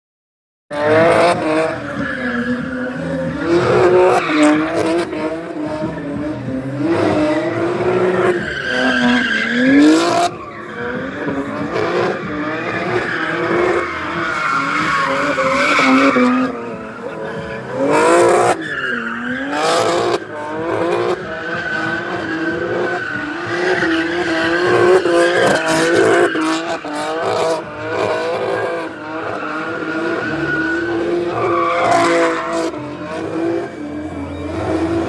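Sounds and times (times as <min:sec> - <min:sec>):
car engine revving hard: 0:00.7 - 0:35.0
tyres squealing: 0:11.8 - 0:27.3, 0:28.1 - 0:35.0.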